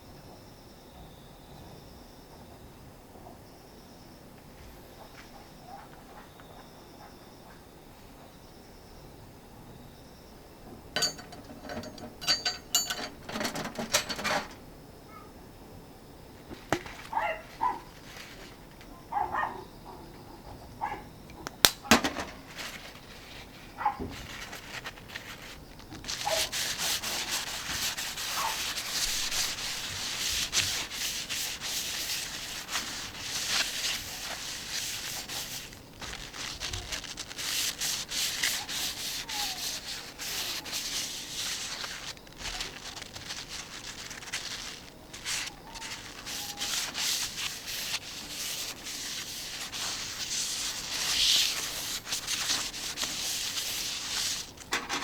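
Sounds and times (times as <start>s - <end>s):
handling clicks and knocks: 11.0s - 14.6s, 54.6s - 55.0s
rubbing on steel griddle plate: 11.0s - 14.6s, 22.6s - 54.7s.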